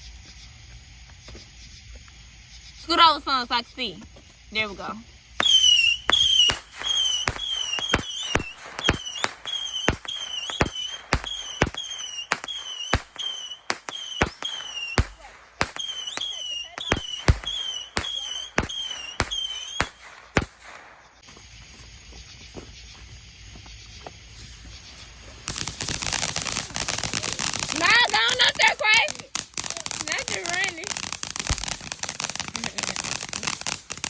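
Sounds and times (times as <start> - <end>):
firework shots with whistles: 5.4 - 21.5, 24.4 - 34.0.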